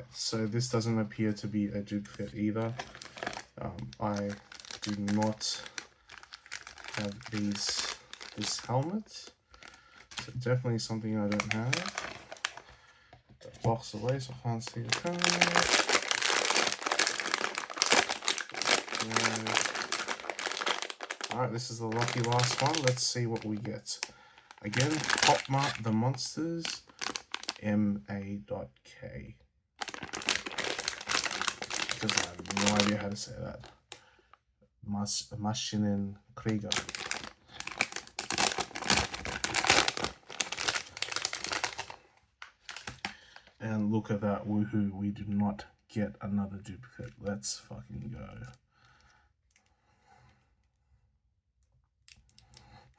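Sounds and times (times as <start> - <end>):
packaging crinkling: 2.1 - 10.3, 11.3 - 12.8, 13.5 - 27.6, 29.8 - 33.7, 36.6 - 43.6.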